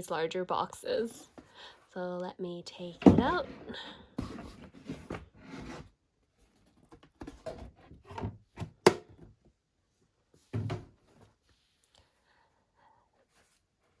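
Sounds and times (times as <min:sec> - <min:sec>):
dull thump: 0:03.0 - 0:03.6.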